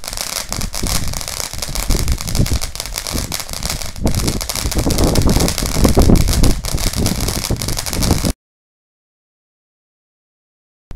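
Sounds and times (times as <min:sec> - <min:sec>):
firework crackling and hissing: 0:00.0 - 0:08.4.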